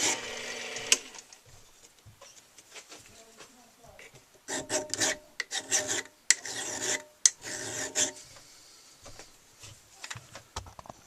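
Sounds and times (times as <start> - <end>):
hand tool rasping across metal: 4.4 - 8.4.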